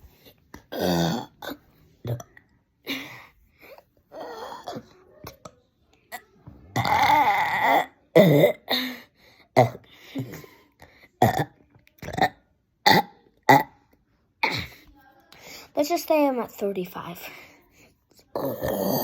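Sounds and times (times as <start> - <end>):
person burping: 0.6 - 3.1, 6.1 - 8.9, 9.6 - 10.5, 11.2 - 13.8, 14.4 - 14.8, 18.3 - 19.0.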